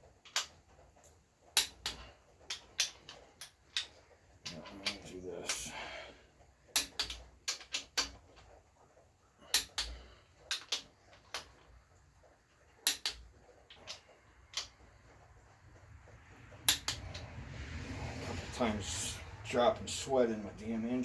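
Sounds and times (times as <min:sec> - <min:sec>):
torque wrench clicking: 0:12.8 - 0:14.0, 0:16.7 - 0:17.2.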